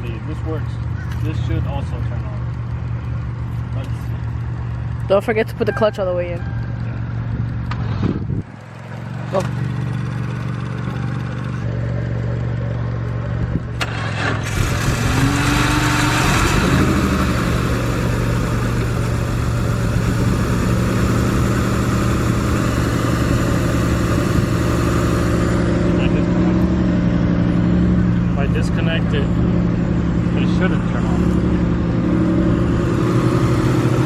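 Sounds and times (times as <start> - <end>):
car engine idling: 0.0 - 34.0.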